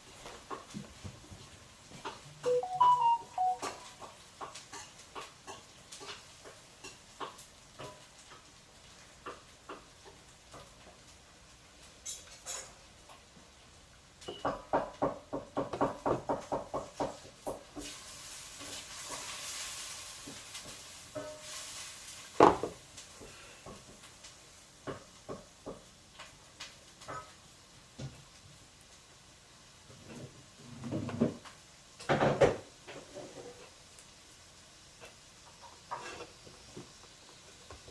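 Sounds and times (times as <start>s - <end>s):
utensils and pans clinking: 12.0s - 12.8s
kitchen hiss: 16.3s - 37.9s.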